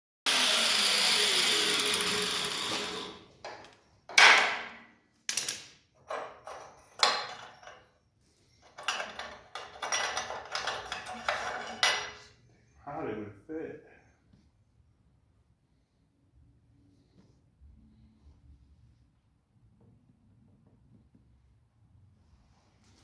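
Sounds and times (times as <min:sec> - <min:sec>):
power tool winding down: 0:00.3 - 0:03.4
metal clanks and knocks: 0:08.6 - 0:12.3.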